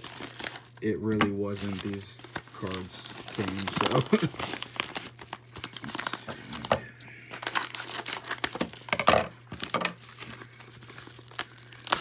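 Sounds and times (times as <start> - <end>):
package wrapping crinkling and tearing: 0.0 - 12.0.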